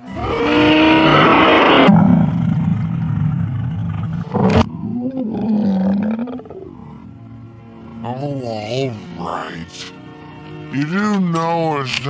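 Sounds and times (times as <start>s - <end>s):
dragon growls: 0.0s - 7.1s.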